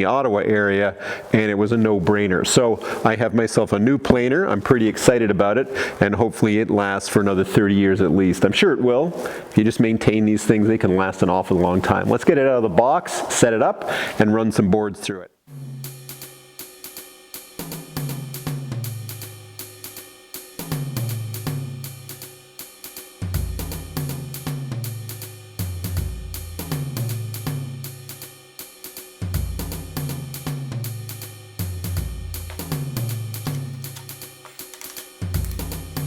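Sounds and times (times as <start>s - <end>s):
drum kit with hi-hat and cymbals: 15.5s - 36.0s
stepping bass line: 23.2s - 28.5s, 29.2s - 34.4s, 35.2s - 36.0s.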